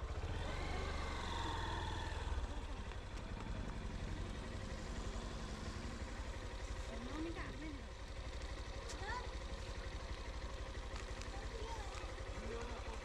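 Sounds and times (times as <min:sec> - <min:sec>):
motorcycle engine at low revs: 0:00.0 - 0:13.0.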